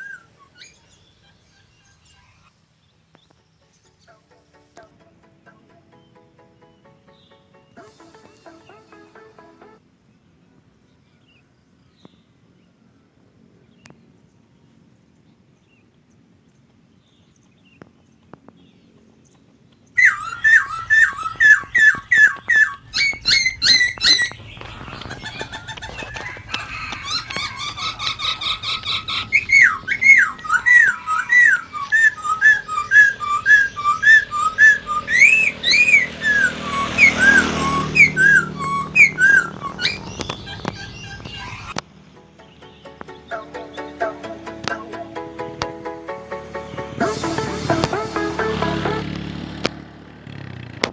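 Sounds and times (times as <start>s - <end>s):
bird singing whistled notes: 20.0s - 41.8s.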